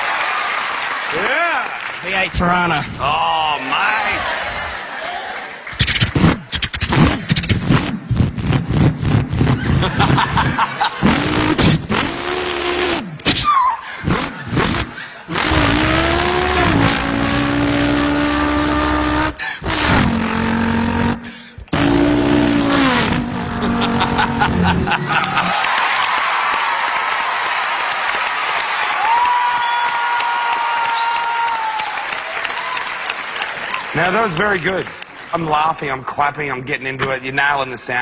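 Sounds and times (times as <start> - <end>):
man imitating race car engine: 10.9 - 13.2, 14.0 - 25.5.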